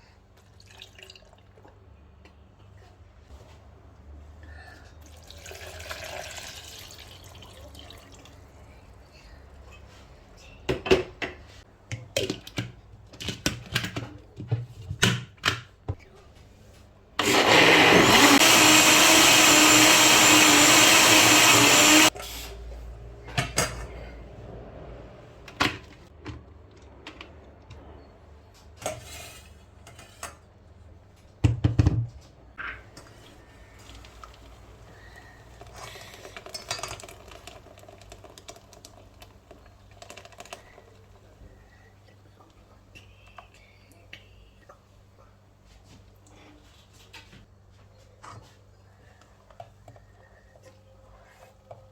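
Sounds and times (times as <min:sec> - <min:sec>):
electric blender running: 0:17.2 - 0:22.2.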